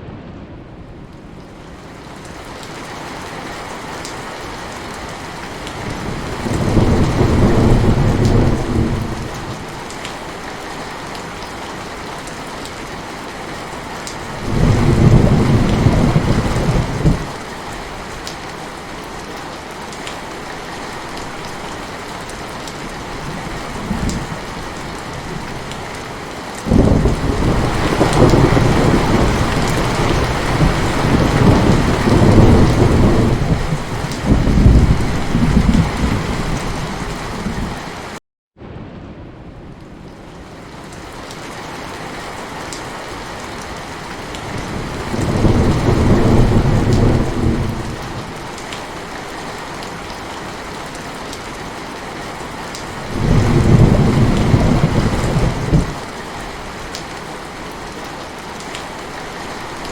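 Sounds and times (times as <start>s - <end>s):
heavy rain: 0.0s - 59.9s
thunder rumbling: 5.5s - 9.9s, 14.3s - 17.4s, 26.7s - 37.9s, 43.8s - 48.6s, 53.0s - 56.1s.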